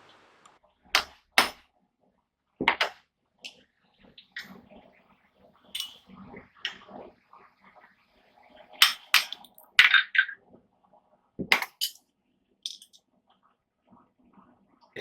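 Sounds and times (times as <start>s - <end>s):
hammer striking steel: 1.0s - 1.6s, 8.8s - 9.4s.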